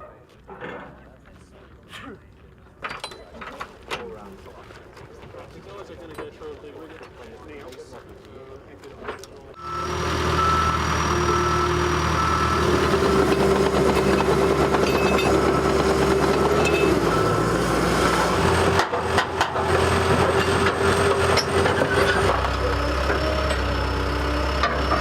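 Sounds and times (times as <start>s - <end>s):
heavy vehicle engine running: 9.6s - 25.0s.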